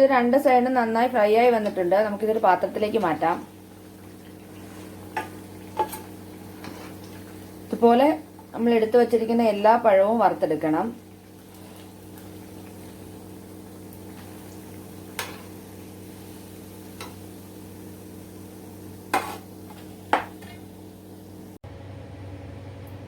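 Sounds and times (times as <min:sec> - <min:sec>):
fritters sizzling in hot oil: 0:00.5 - 0:21.5.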